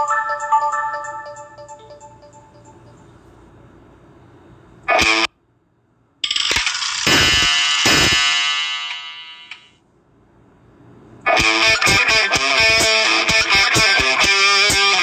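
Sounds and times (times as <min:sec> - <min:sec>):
phone ringtone: 0:00.0 - 0:03.0.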